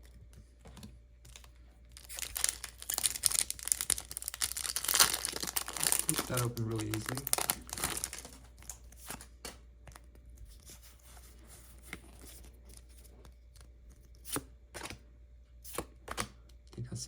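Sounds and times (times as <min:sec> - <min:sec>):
trading cards rustling and clicking: 0:00.3 - 0:15.0
foil wrapper crinkling: 0:01.3 - 0:09.4.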